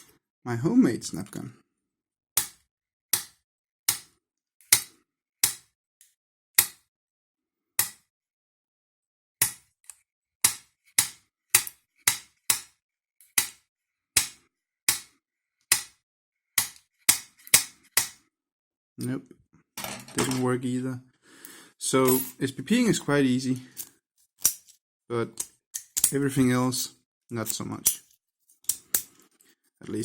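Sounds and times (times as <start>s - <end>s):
sharp metallic snaps: 10.4s - 12.7s, 25.4s - 26.2s.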